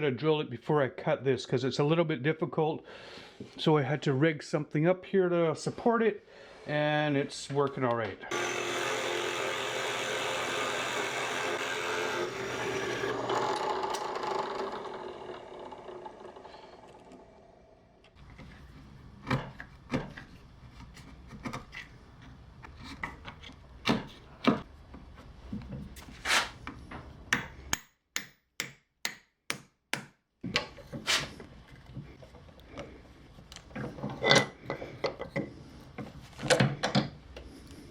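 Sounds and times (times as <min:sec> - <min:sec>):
drill boring into wood: 0:08.3 - 0:17.4.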